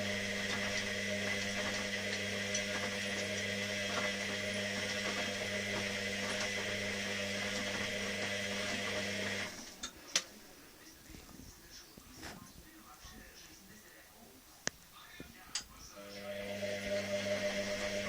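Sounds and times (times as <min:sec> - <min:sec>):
washing machine motor hum: 0:00.0 - 0:11.3, 0:15.6 - 0:18.0.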